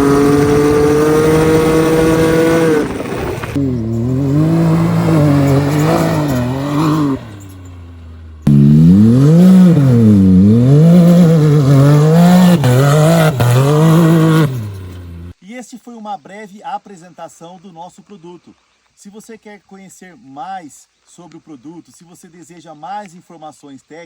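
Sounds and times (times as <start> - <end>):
turbocharged engine revving: 0.0 - 15.3.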